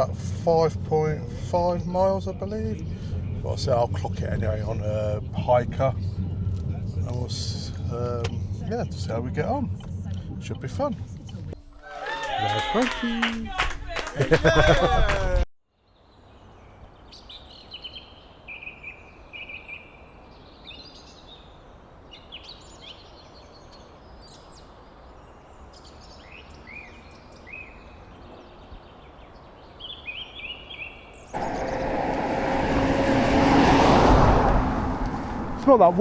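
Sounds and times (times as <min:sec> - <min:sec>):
low hum: 0:00.0 - 0:11.6, 0:31.4 - 0:36.0
songbirds chirping: 0:15.8 - 0:36.0
loud rushing noise: 0:31.4 - 0:36.0.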